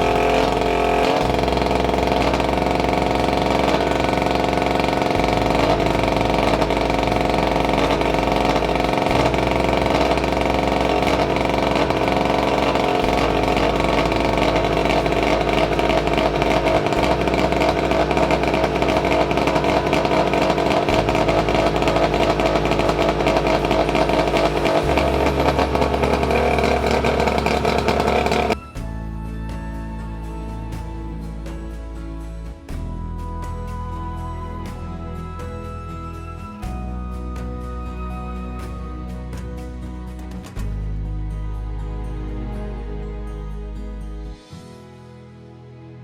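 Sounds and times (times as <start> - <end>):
boat motor running: 0.0 - 28.6.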